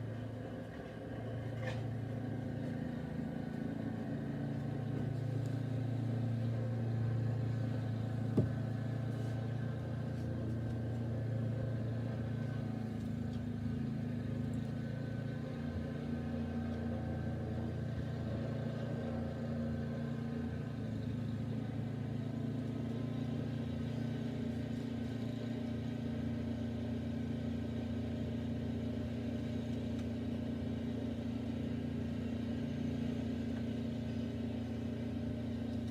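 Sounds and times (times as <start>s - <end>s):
engine humming: 0.0s - 35.9s.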